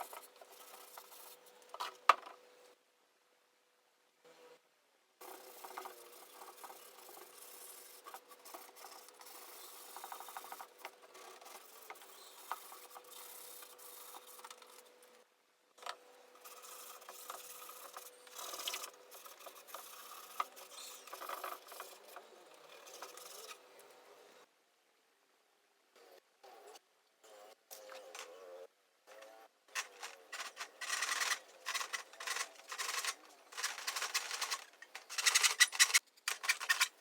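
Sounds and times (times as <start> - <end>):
hand sanding wood: 29.8 - 36.0.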